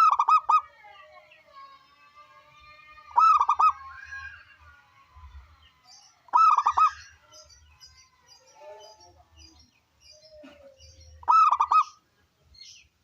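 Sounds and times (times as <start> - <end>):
dove cooing: 0.0 - 0.7, 3.2 - 3.8, 6.3 - 7.0, 10.3 - 12.0
faint high chirps: 0.0 - 12.0.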